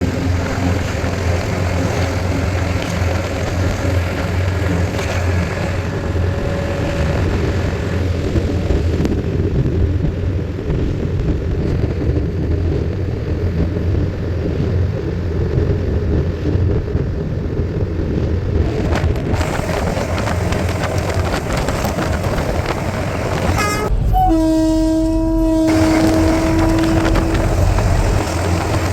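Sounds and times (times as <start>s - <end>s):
train rumble: 0.0s - 28.9s
loud train horn: 23.4s - 28.9s.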